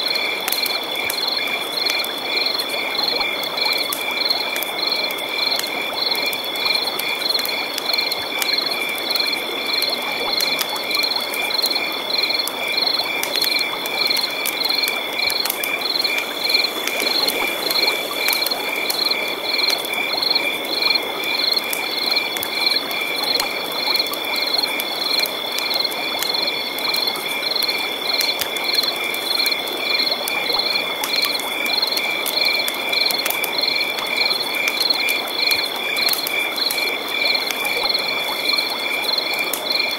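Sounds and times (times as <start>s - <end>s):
continuous high insect trill: 0.0s - 39.9s.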